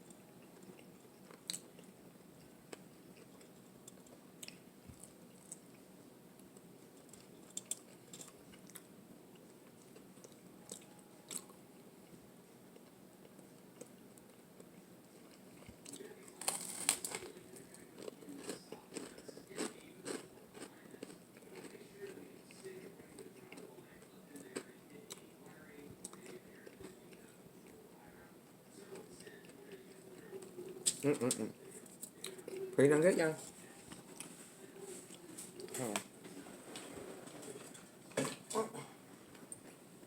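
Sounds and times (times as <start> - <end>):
crunchy bites and chewing: 15.6 - 17.4, 18.0 - 21.8.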